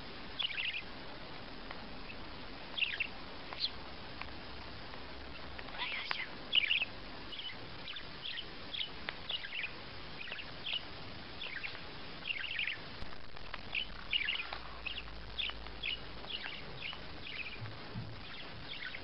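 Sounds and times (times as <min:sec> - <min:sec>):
steady background hiss: 0:00.0 - 0:19.0
small bird chirping: 0:00.3 - 0:01.0, 0:01.9 - 0:19.0.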